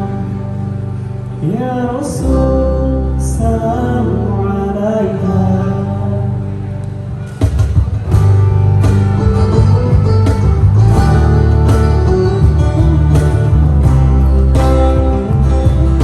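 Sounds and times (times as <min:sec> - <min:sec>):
bass line: 0:00.0 - 0:16.0
strummed acoustic guitar chords: 0:00.0 - 0:16.0
steady drum beat: 0:07.4 - 0:16.0.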